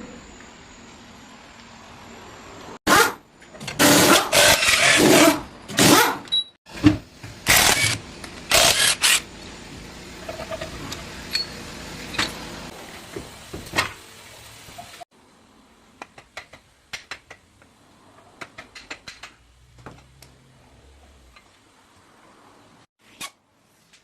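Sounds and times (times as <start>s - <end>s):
air impact wrench bursts: 7.4s - 9.2s.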